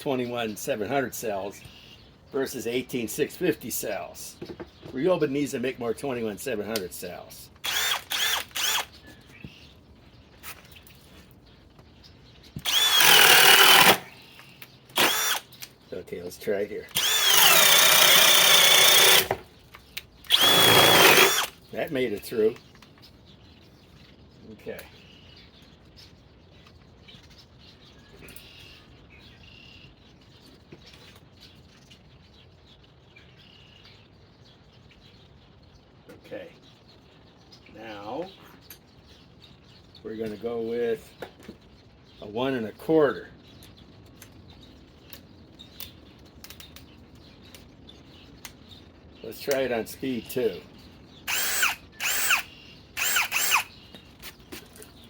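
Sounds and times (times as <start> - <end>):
birds chirping faintly: 0.0 - 55.0
cordless drill whirring: 7.6 - 8.9, 12.6 - 14.1, 15.0 - 15.5, 16.9 - 19.4, 20.3 - 21.5, 51.3 - 53.7.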